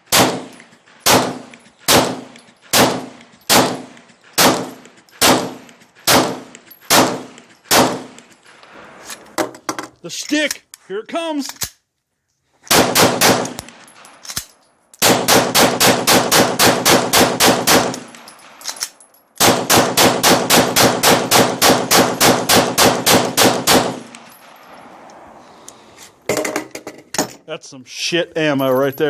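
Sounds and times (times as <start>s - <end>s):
pistol shots: 0.0s - 8.3s, 12.7s - 14.4s, 15.0s - 18.8s, 19.4s - 24.7s.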